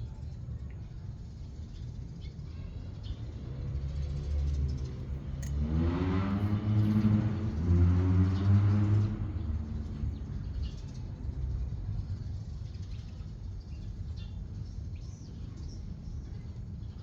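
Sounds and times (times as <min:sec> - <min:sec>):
vehicle engine passing by: 0:03.7 - 0:10.8.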